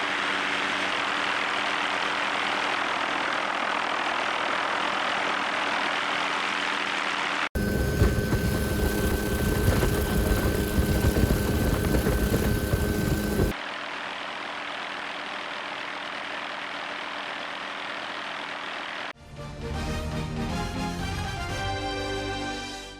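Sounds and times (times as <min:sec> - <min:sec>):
helicopter rotor chop: 0:00.0 - 0:13.6.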